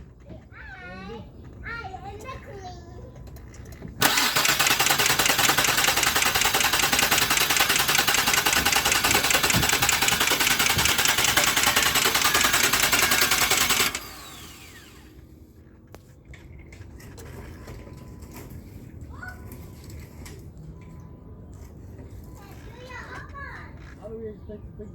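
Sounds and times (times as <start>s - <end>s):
starter motor cranking engine: 4.0s - 15.1s.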